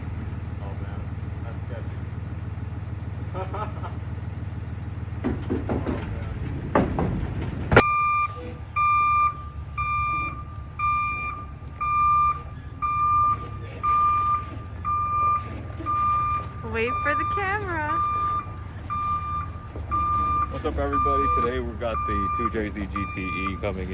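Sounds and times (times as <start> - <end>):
truck engine rumbling: 0.0 - 23.9
back-up alarm beeping: 7.8 - 23.9.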